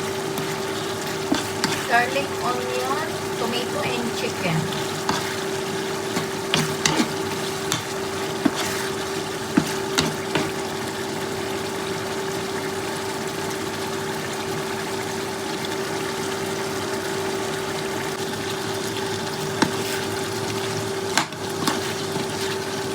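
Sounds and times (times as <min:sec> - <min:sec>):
food sizzling in a pan: 0:00.0 - 0:22.9
utensil clicking in pan: 0:06.1 - 0:08.6.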